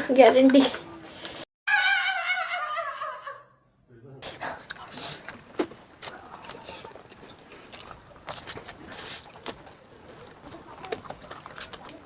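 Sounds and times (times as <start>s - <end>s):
noodles slurped and chewed: 4.2s - 12.0s.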